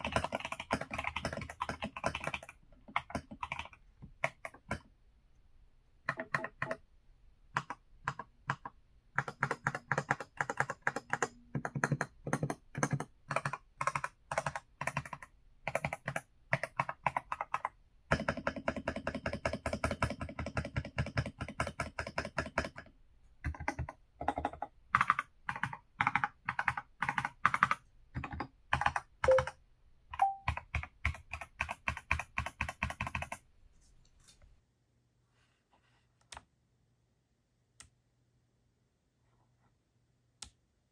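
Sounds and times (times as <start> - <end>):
mechanical keyboard typing: 0.0 - 4.9, 6.1 - 6.8, 7.5 - 33.4.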